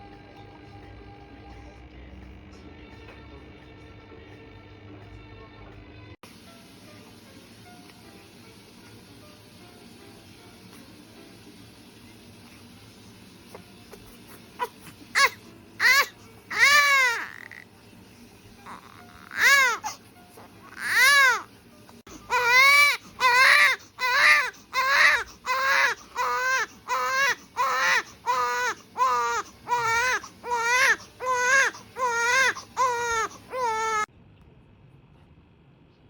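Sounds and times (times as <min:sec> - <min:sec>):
baby crying: 0:13.9 - 0:17.7, 0:18.6 - 0:21.5, 0:22.1 - 0:34.1.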